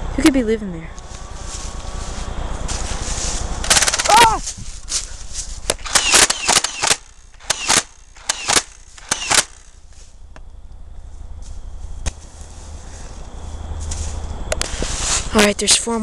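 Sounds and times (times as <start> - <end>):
toy blaster firing snapping shots: 3.6 - 4.4, 5.7 - 9.8.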